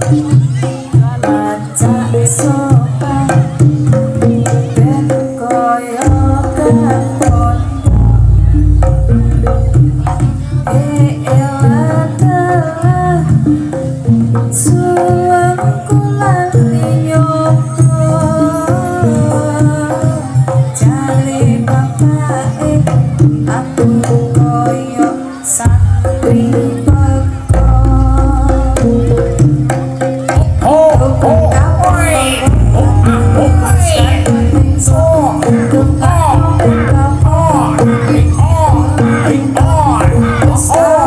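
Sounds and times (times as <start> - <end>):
hand drumming: 0.0 - 41.0
heavy steady bass: 6.3 - 10.7, 31.0 - 41.0.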